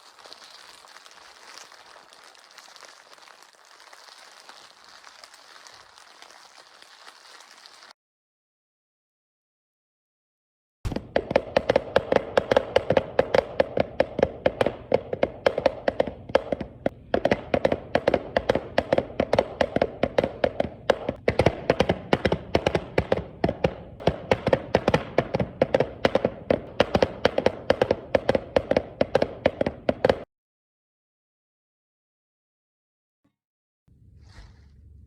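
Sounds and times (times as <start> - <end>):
rapid irregular tapping: 10.9 - 30.3.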